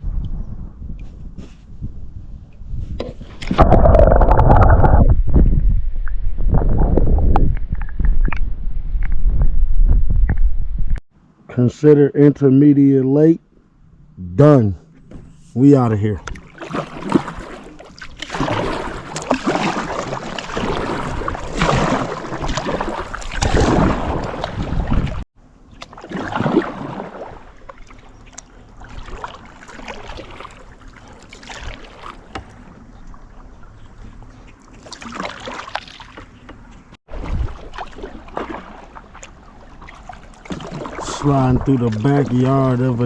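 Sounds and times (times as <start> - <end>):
paddle strokes splashing in water: 16.2 - 43.0.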